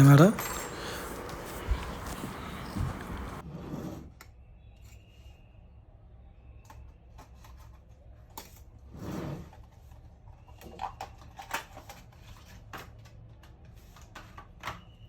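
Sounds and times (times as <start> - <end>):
scraping rustle: 0.0 - 3.4.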